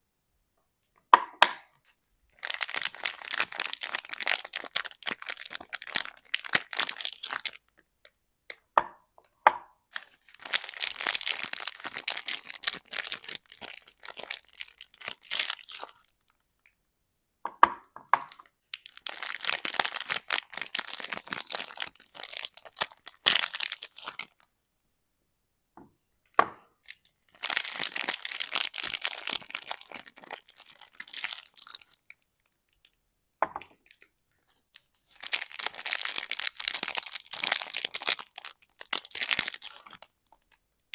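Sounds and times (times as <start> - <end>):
wrappers tearing and crinkling: 2.4 - 7.7, 10.0 - 16.3, 18.8 - 24.4, 26.9 - 32.1, 35.1 - 40.6.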